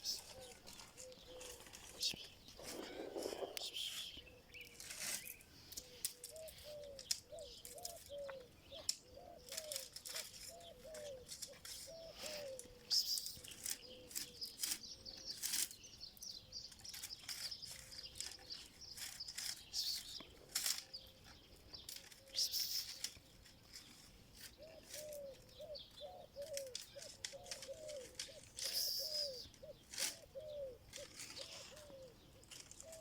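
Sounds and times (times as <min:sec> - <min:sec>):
faint high chirping: 0:00.0 - 0:20.3, 0:24.6 - 0:29.8.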